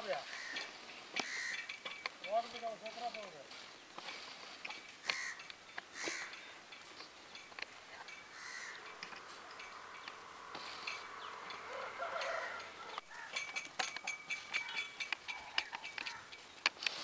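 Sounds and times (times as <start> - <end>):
birds calling: 0.1 - 17.0
sharp clicks and ticks: 10.9 - 17.0.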